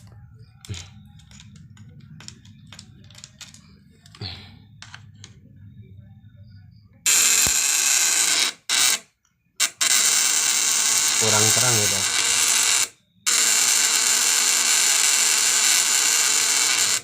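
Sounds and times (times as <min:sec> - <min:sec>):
scattered clicking: 0:00.0 - 0:04.2
faint low hum: 0:00.0 - 0:09.6
loud harsh transformer buzz: 0:07.0 - 0:17.0.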